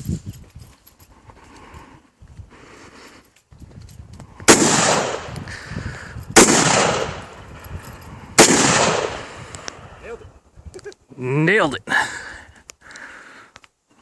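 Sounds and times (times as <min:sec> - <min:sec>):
rifle shots: 0:04.5 - 0:05.4, 0:06.4 - 0:07.4, 0:08.4 - 0:09.4.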